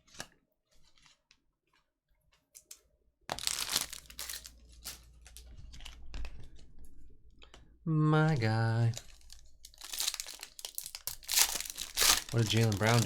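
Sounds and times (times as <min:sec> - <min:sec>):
card pack wrapper crinkling and tearing: 0:03.3 - 0:06.7, 0:08.8 - 0:13.0.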